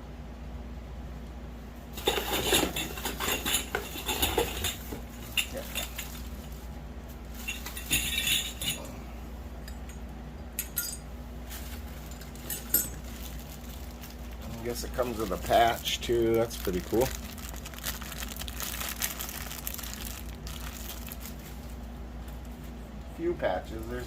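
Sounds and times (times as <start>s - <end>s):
small hard parts clinking: 2.0s - 6.5s, 7.4s - 9.0s, 10.6s - 11.1s, 12.0s - 13.4s
packaging rustling: 11.5s - 22.0s.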